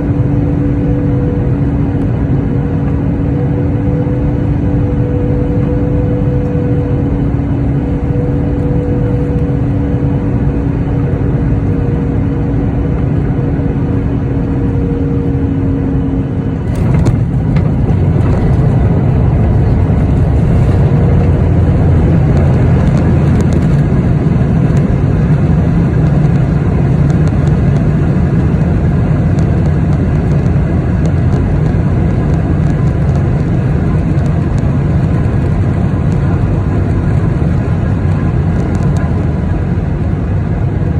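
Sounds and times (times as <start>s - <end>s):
jet engine hum: 0.0s - 40.9s
loud rushing noise: 16.5s - 39.6s.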